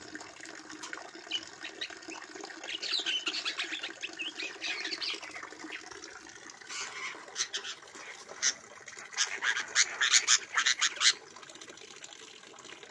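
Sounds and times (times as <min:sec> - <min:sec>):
birds giving sharp calls: 0:01.3 - 0:05.9, 0:06.7 - 0:11.2.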